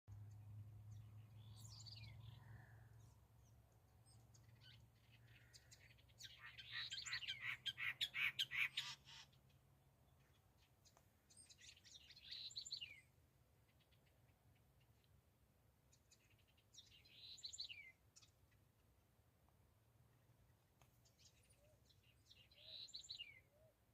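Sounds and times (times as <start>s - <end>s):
bird calling and chirping: 4.1s - 9.6s, 21.2s - 23.7s.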